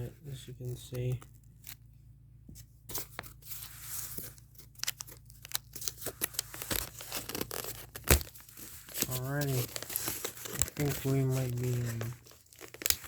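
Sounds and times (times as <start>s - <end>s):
cardboard box tearing: 5.8s - 13.0s.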